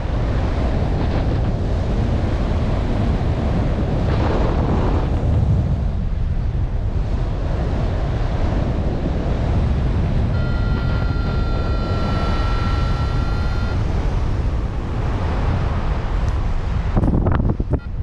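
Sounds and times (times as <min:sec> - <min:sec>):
wind buffeting microphone: 0:00.0 - 0:18.0
steady high tone: 0:10.3 - 0:13.8.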